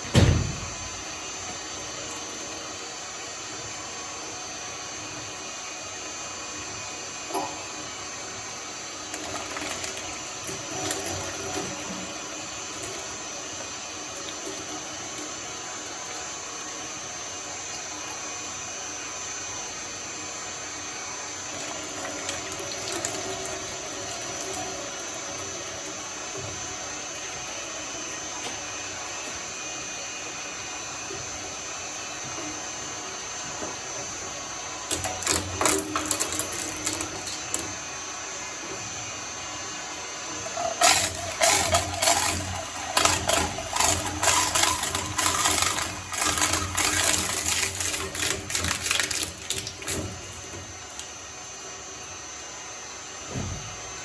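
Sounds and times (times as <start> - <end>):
shredder whining: 8.1 - 19.6, 20.3 - 29.7, 34.0 - 52.6
shredder crunching: 9.0 - 15.4, 34.9 - 37.9, 40.5 - 51.2.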